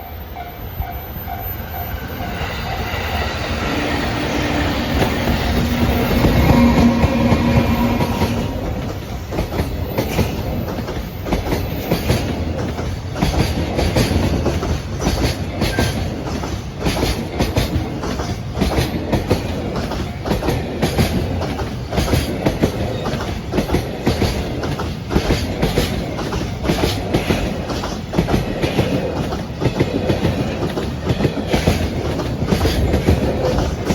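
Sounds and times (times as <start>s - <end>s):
electric locomotive passing: 0.0s - 33.9s
train wheels clicking over rail joints: 0.4s - 33.9s
steady tones: 1.4s - 9.5s.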